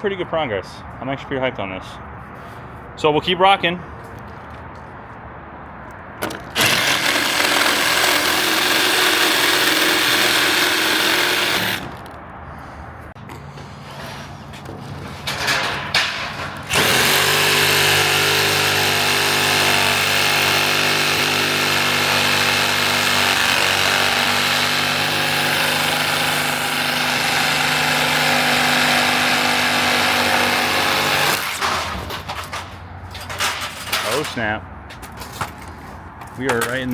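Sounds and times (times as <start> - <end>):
power saw cutting: 6.5 - 12.2, 15.3 - 32.4.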